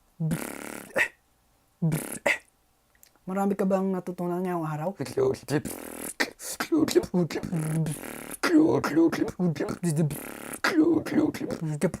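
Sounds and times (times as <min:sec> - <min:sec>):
person beatboxing: 0:00.2 - 0:01.2, 0:01.8 - 0:02.4, 0:05.1 - 0:12.0.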